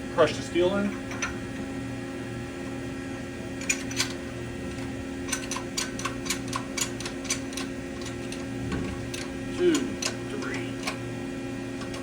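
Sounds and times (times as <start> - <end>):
electrical hum: 0.0 - 12.0
sharp metallic clicks: 3.6 - 4.2, 5.3 - 8.5, 9.1 - 11.0.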